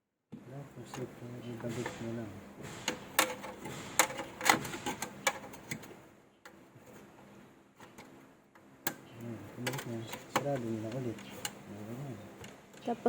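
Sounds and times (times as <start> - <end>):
computer case parts clicking: 0.8 - 6.6, 7.8 - 11.6.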